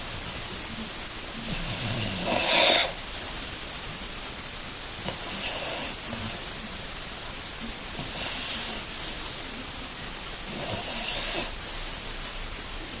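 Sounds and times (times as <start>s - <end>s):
dog snoring and wheezing: 1.4s - 3.0s, 5.0s - 6.4s, 8.0s - 9.2s, 10.5s - 11.6s.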